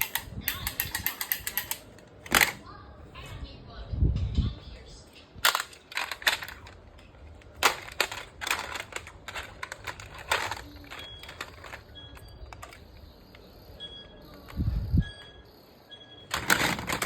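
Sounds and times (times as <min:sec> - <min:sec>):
popcorn popping: 0:00.0 - 0:02.6, 0:05.4 - 0:13.4
microwave humming: 0:05.2 - 0:17.0.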